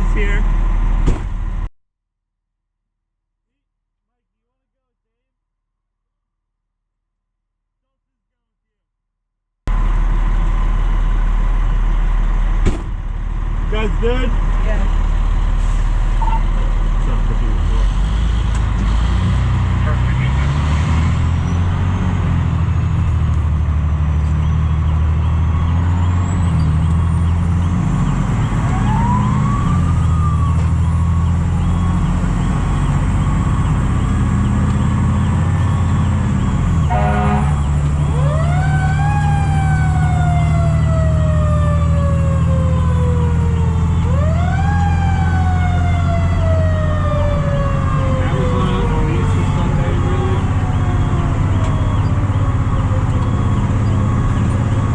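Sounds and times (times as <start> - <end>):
fire truck engine running: 0.0 - 1.7, 9.7 - 54.9
siren wailing: 28.1 - 54.9.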